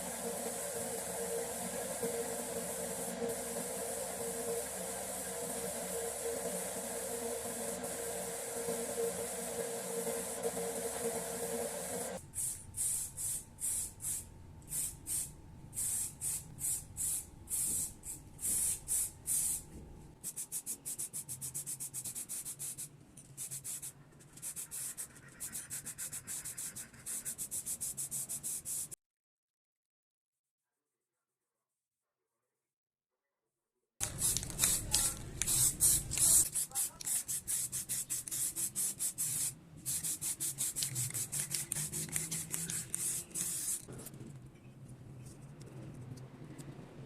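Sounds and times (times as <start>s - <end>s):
steady hissing noise: 0.0s - 19.7s
sandpaper rubbing: 34.0s - 43.9s.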